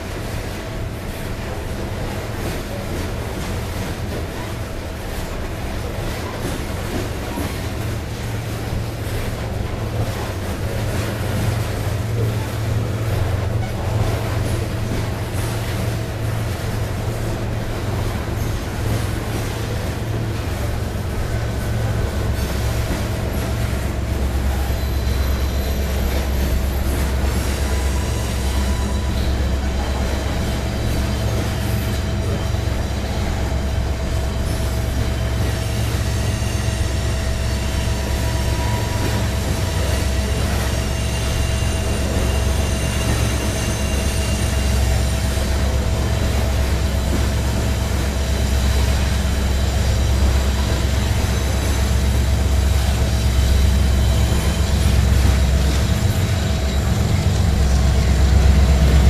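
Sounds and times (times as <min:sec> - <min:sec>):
freight train rumbling past: 0:00.0 - 0:59.0
wheel squeal: 0:22.3 - 0:33.2, 0:34.4 - 0:45.8.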